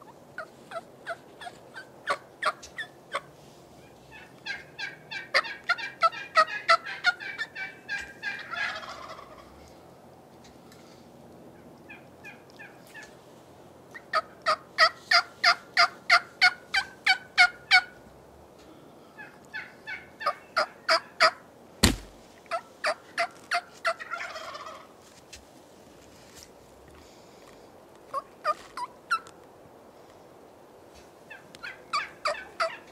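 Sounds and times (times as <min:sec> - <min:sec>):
turkey gobbling: 0:00.4 - 0:03.3, 0:04.1 - 0:09.5, 0:14.0 - 0:18.0, 0:19.2 - 0:24.8, 0:31.3 - 0:32.9
turkey yelps: 0:04.1 - 0:09.4, 0:19.2 - 0:24.8, 0:31.3 - 0:32.9
sharp thump: 0:21.8 - 0:22.3.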